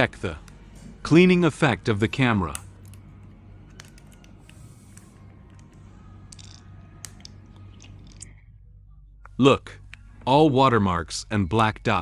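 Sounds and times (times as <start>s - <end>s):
low hum: 1.7s - 12.0s
faint clicks and handling noises: 2.1s - 8.3s.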